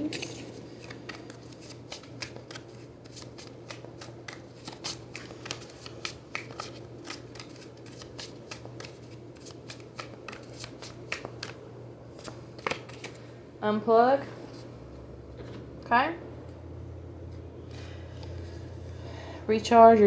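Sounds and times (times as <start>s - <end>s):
cards being shuffled: 0.0s - 13.3s.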